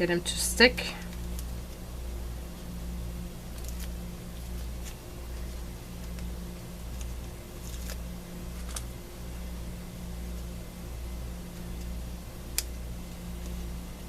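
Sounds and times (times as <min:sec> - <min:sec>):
low mechanical hum: 0:00.0 - 0:14.0.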